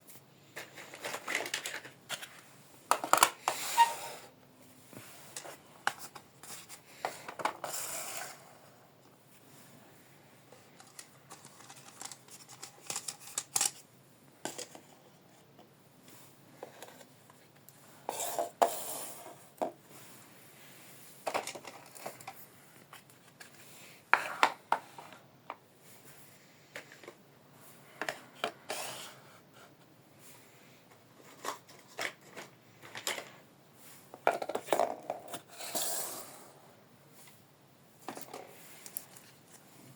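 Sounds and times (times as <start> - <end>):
plastic and paper rustling: 0.1 - 3.9, 10.5 - 13.8, 21.2 - 25.2, 30.9 - 35.8, 38.0 - 39.9.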